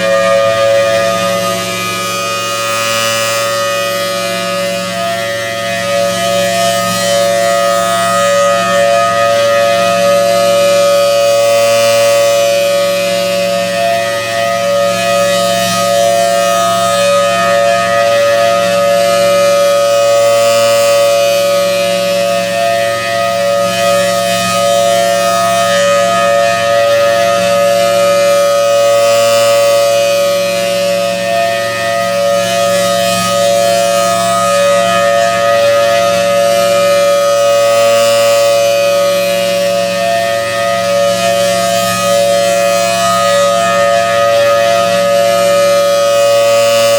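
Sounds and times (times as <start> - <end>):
warning siren steady tone: 0.0 - 46.9.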